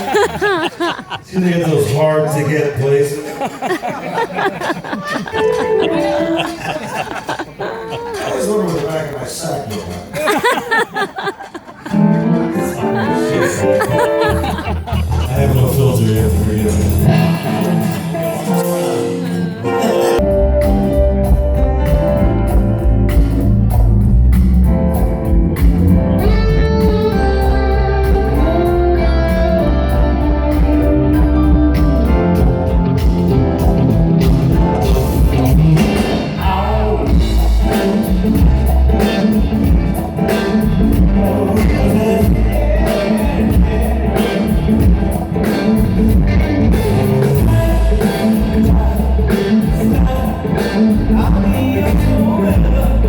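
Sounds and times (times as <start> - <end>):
drums: 0.0 - 1.2, 9.7 - 12.3, 13.8 - 19.3, 20.2 - 53.0
person singing: 5.2 - 6.9, 12.0 - 20.4, 34.8 - 53.0
electric guitar: 5.4 - 6.8, 11.8 - 53.0
bass guitar: 12.0 - 53.0.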